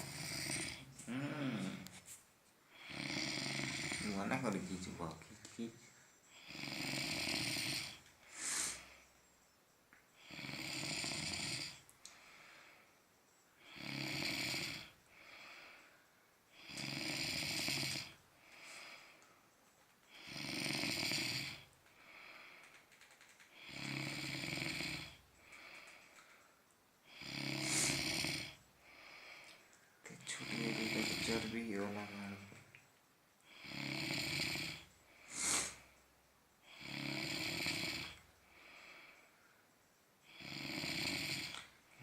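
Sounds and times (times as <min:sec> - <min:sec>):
person snoring heavily: 0:00.0 - 0:01.9, 0:02.7 - 0:04.5, 0:06.3 - 0:09.0, 0:10.2 - 0:12.8, 0:13.6 - 0:15.8, 0:16.5 - 0:19.1, 0:20.1 - 0:22.7, 0:23.5 - 0:26.0, 0:27.0 - 0:29.5, 0:30.2 - 0:32.6, 0:33.5 - 0:35.9, 0:36.6 - 0:39.2, 0:40.2 - 0:42.0
soft breath out: 0:08.2 - 0:09.3, 0:35.1 - 0:36.1.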